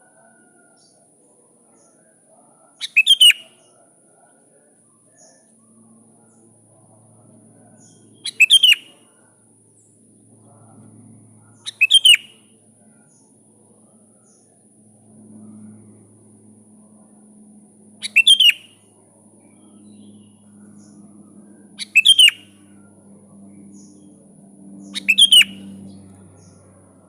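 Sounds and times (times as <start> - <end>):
bird chattering down-sweeping calls: 2.8 - 3.6, 7.8 - 9.1, 11.6 - 12.4, 18.0 - 18.9, 19.5 - 22.8, 24.8 - 26.5.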